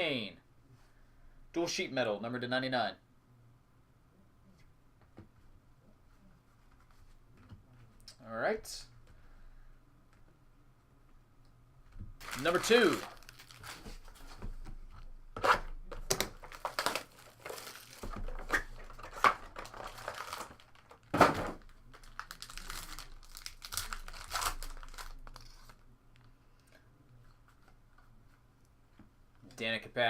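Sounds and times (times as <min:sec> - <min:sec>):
plastic packs tearing and crinkling: 0:12.2 - 0:14.2, 0:15.4 - 0:25.8.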